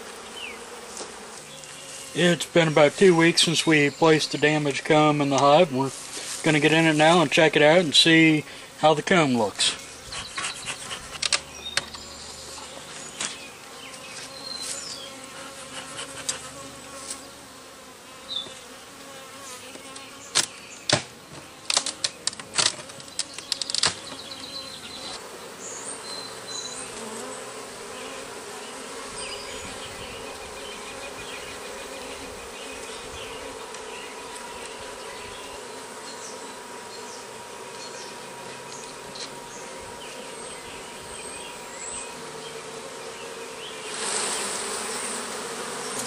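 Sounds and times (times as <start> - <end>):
honeybees buzzing: 0.0 - 46.0
sharp clicks and knocks: 20.3 - 24.0.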